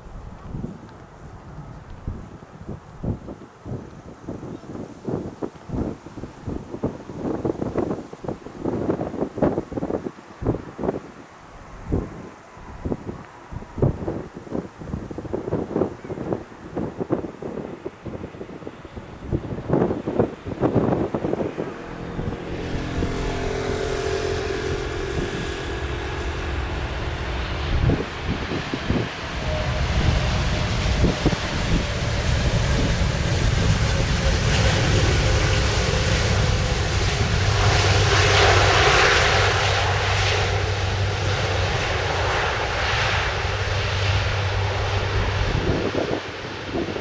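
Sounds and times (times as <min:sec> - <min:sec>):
wind buffeting microphone: 0:00.0 - 0:47.0
jet engines whining: 0:15.3 - 0:47.0.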